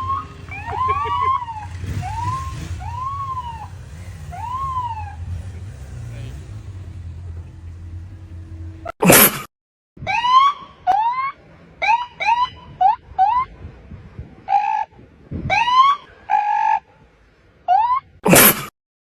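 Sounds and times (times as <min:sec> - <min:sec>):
police siren whoop chirps: 0:00.0 - 0:05.8, 0:10.0 - 0:13.6, 0:15.5 - 0:16.9.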